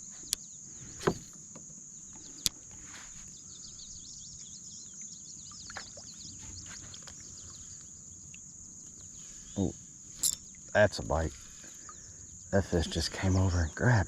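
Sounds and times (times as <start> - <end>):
birds chirping: 0.0 - 14.0
insects droning: 0.0 - 14.0
dull thump: 0.9 - 1.4.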